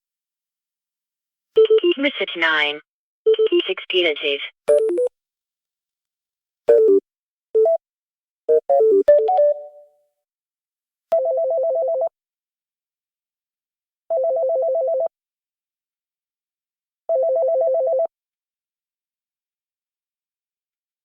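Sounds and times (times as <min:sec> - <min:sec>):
short melodic phone beeps: 0:08.5 - 0:09.9.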